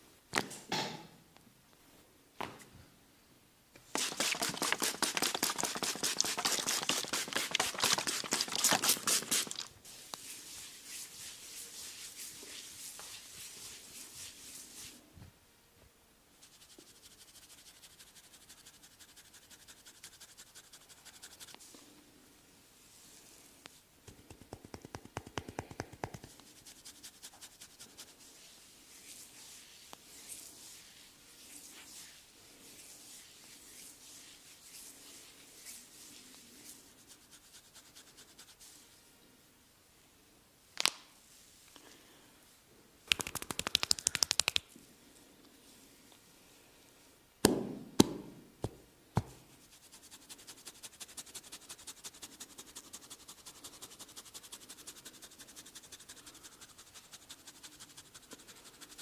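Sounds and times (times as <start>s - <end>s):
soft rubbing hiss: 3.8s - 47.4s, 49.2s - 59.0s
rapid massage taps: 3.9s - 9.6s, 24.0s - 26.4s, 43.1s - 44.7s.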